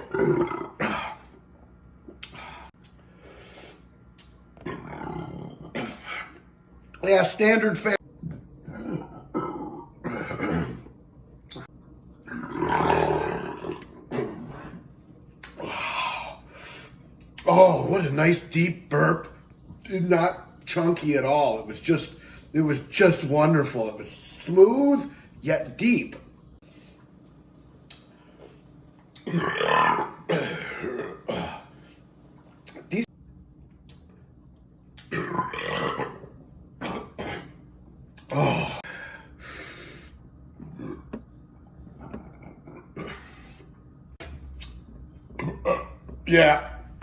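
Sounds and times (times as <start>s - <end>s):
man belching: 0.0s - 1.3s, 8.6s - 10.9s, 29.2s - 31.7s, 35.0s - 37.5s, 38.2s - 38.9s, 40.6s - 41.3s, 42.0s - 43.5s, 45.3s - 46.6s
man burping: 0.0s - 1.4s, 8.6s - 10.9s, 29.2s - 31.7s, 35.0s - 36.2s, 36.8s - 37.6s, 38.2s - 38.9s, 40.6s - 41.2s, 42.0s - 43.5s, 45.3s - 46.1s
throaty sounds: 0.0s - 1.5s, 2.1s - 7.0s, 8.1s - 16.5s, 29.2s - 32.0s, 35.0s - 47.0s.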